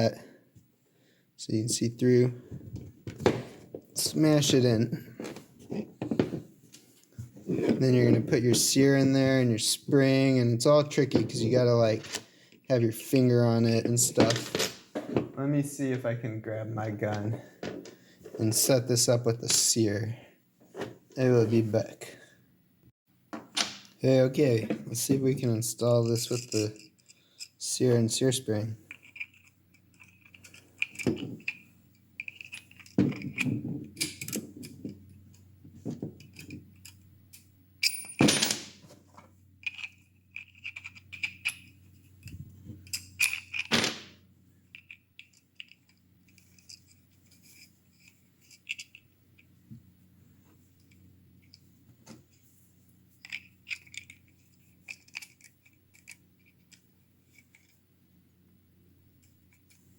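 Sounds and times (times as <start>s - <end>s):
clicks and scrapes of small parts: 26.0s - 27.6s, 28.9s - 37.5s, 38.8s - 43.7s, 44.7s - 49.6s, 50.4s - 52.5s, 53.1s - 57.8s, 59.2s - 59.9s.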